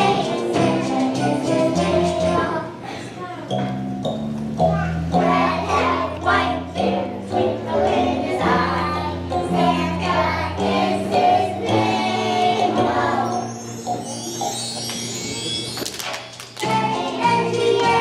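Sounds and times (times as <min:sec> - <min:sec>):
accompaniment music with bass notes: 0:00.0 - 0:02.6, 0:03.5 - 0:18.0
children's choir singing: 0:00.0 - 0:02.8, 0:05.2 - 0:14.6, 0:16.6 - 0:18.0.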